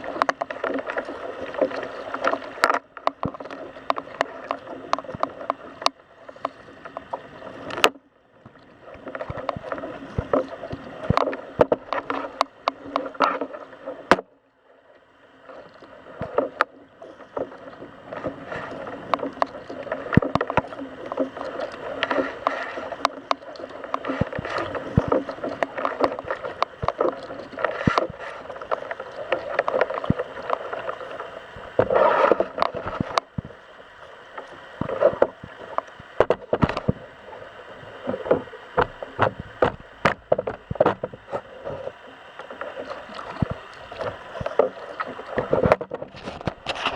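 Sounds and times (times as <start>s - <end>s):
water splashing against kayak hull: 0.0s - 46.9s
sharp knocks and clicks: 38.1s - 41.9s.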